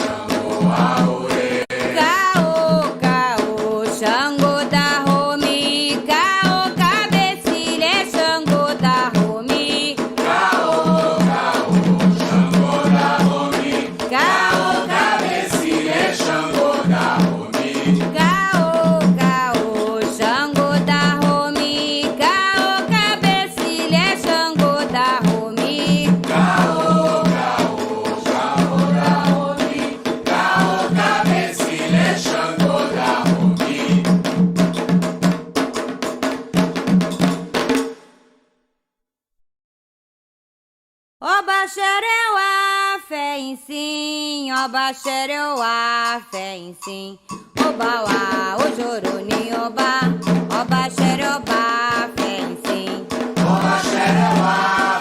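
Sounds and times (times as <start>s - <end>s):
voices chanting: 0.0s - 2.2s, 10.2s - 18.3s, 26.3s - 34.1s, 53.4s - 55.0s
hand drums and percussion: 0.0s - 38.4s, 43.7s - 55.0s.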